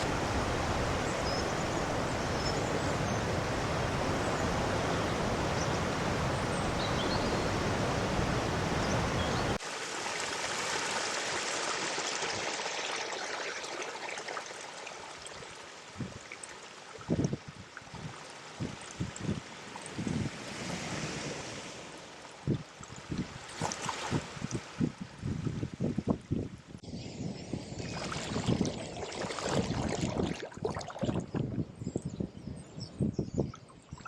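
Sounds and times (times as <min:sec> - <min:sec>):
floodwater rushing: 0:00.0 - 0:17.2, 0:28.0 - 0:31.3
water gurgles and plops: 0:27.8 - 0:31.6.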